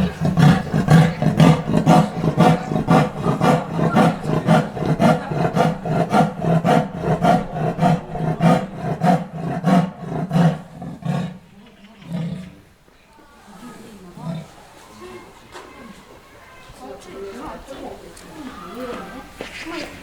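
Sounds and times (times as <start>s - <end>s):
big cat grunting: 0.0s - 12.8s.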